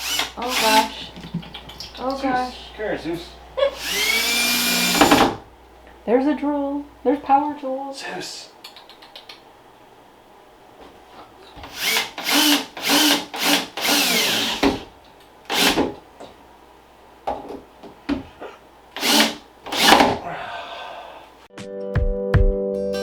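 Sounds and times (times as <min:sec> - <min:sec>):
power drill bursts: 0:00.0 - 0:00.9, 0:03.8 - 0:05.4, 0:11.7 - 0:14.8, 0:15.5 - 0:15.9, 0:19.0 - 0:20.2.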